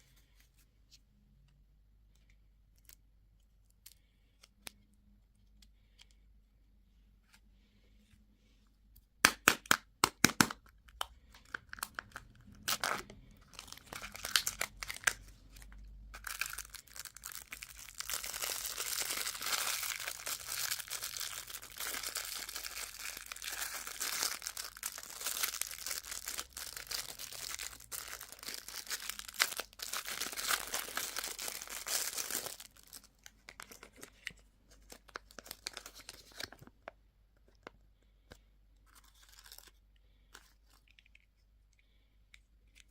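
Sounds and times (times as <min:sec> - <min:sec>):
candy wrapper crinkling: 0:10.4 - 0:37.8, 0:38.8 - 0:41.8.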